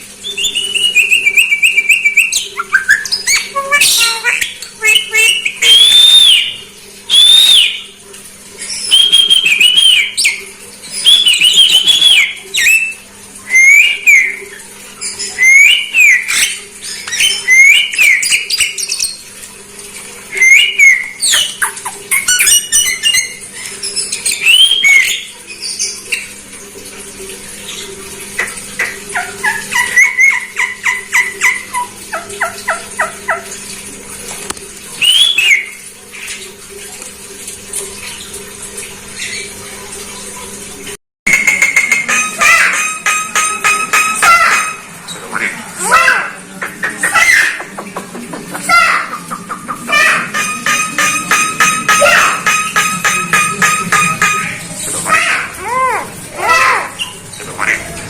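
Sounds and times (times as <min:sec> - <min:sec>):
bird whistled calls: 0:00.2 - 0:07.8, 0:08.6 - 0:10.4, 0:35.0 - 0:35.8.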